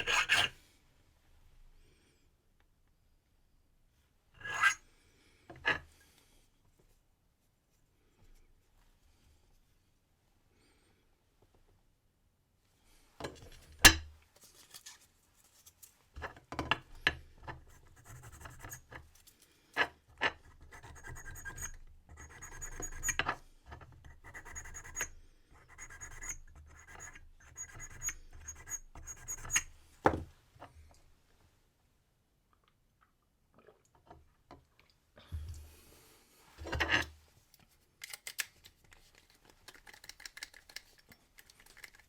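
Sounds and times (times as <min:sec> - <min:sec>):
file rasping on brass: 0:00.0 - 0:00.5, 0:04.4 - 0:04.8, 0:20.4 - 0:23.3, 0:24.1 - 0:29.7.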